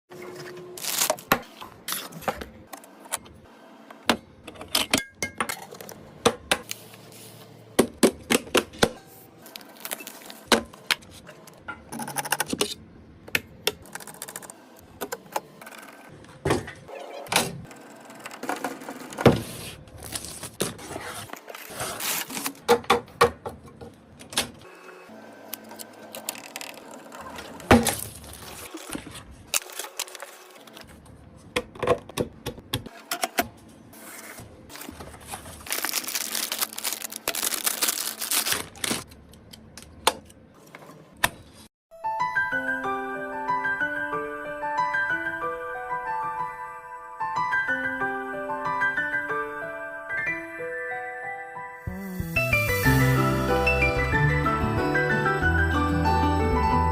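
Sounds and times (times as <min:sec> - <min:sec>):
background music: 0:41.9 - 0:56.9.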